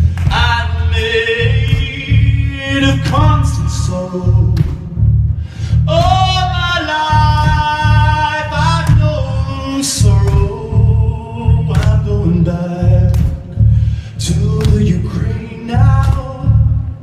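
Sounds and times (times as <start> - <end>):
loud booming bass: 0.0 - 17.0.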